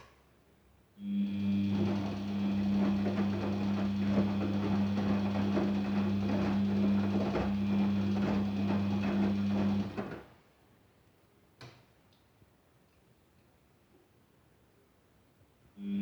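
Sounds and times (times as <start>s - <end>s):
inlet valve humming: 1.2s - 10.1s
water rushing into washing machine: 1.2s - 10.3s.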